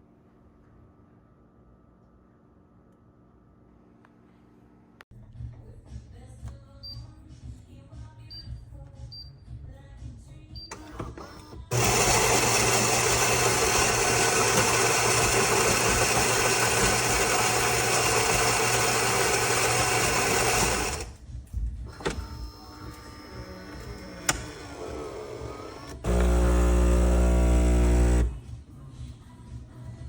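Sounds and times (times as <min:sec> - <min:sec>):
espresso machine buzzing and hissing: 0:11.6 - 0:21.1, 0:22.7 - 0:28.4.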